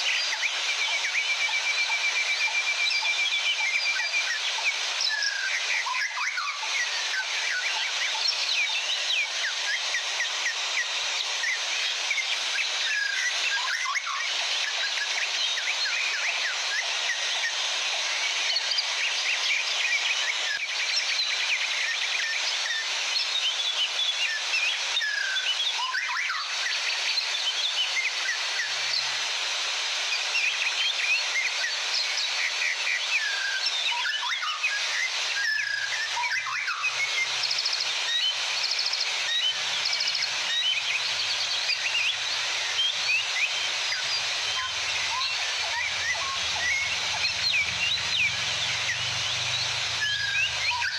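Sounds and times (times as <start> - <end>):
small birds chirping: 30.2 - 50.9.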